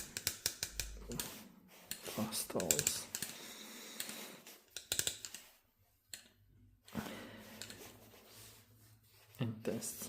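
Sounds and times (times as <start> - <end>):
soft handling noise: 6.8 - 10.0.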